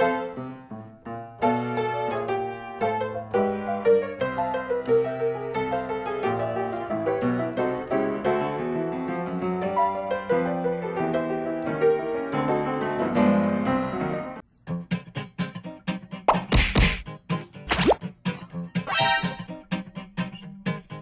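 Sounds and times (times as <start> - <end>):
piano music: 0.0 - 14.4, 18.9 - 19.6.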